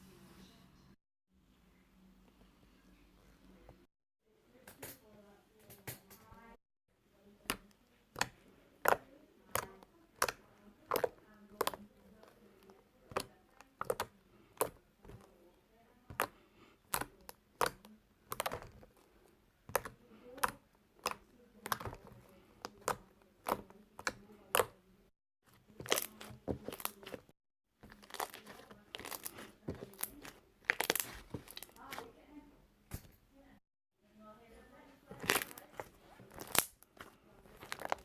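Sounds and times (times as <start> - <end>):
slime squished by hand: 25.8 - 32.0, 35.1 - 38.0.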